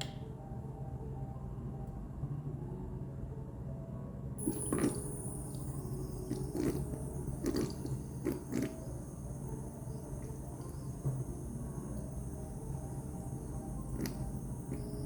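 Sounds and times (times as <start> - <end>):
low steady hum: 0.0 - 15.0
water drops plipping: 4.4 - 15.0.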